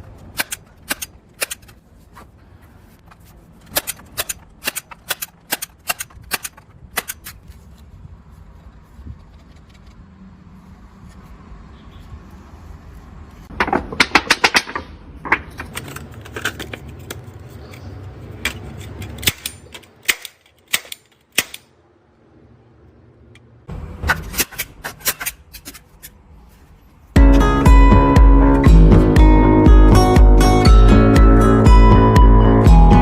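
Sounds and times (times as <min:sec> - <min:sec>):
nail gun firing: 0:00.3 - 0:01.7, 0:19.2 - 0:21.7.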